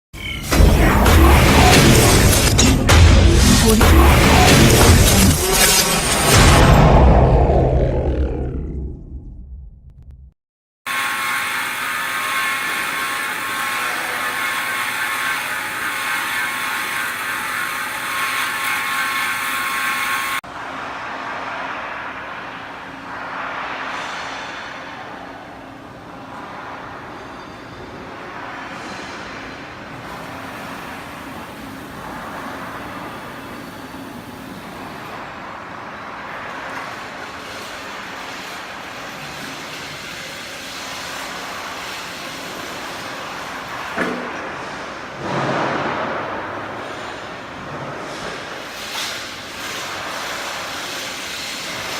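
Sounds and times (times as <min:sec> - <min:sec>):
band saw running with whine: 0:10.9 - 0:20.4.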